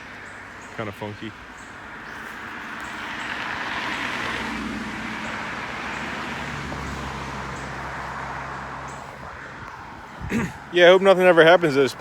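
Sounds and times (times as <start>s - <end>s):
car driving past: 2.8s - 10.0s.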